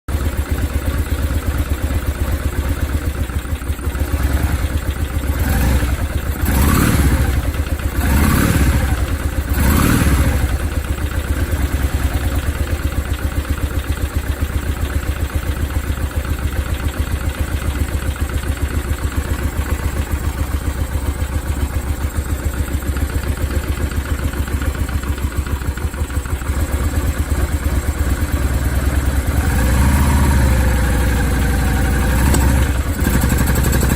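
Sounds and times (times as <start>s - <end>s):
engine clattering rattle: 0.1s - 33.9s
motorcycle engine revving and idling: 0.1s - 33.9s.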